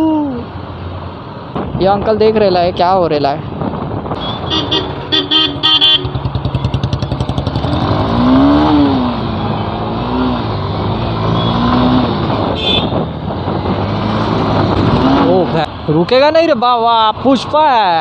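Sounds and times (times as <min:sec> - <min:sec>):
street traffic: 0:00.0 - 0:18.0
vehicle horn toots: 0:04.2 - 0:06.2, 0:12.5 - 0:13.1
motorcycle engine running: 0:04.5 - 0:08.0.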